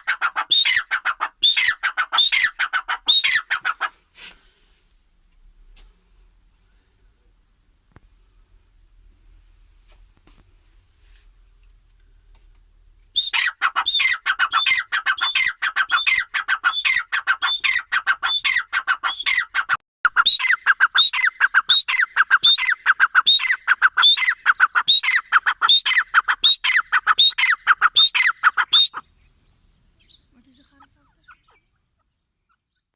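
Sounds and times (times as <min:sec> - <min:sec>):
francolin calling: 0:00.0 - 0:03.8, 0:13.1 - 0:32.9.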